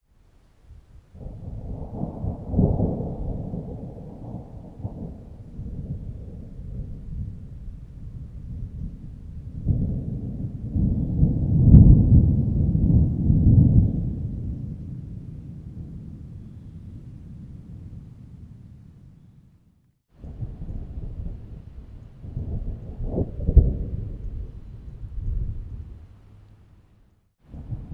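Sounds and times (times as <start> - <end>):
thunder rumbling: 0.6 - 19.6, 20.2 - 26.4, 27.5 - 27.9
sharp thunder crack: 1.3 - 18.6.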